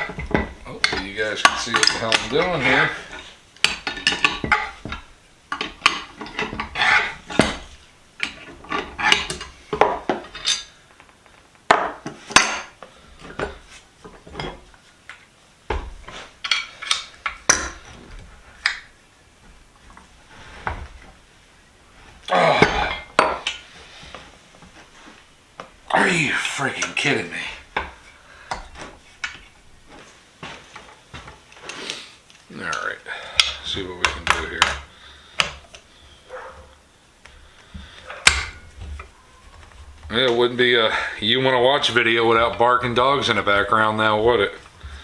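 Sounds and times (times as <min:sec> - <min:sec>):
metal parts clinking and scraping: 0:00.0 - 0:14.7, 0:16.0 - 0:18.0.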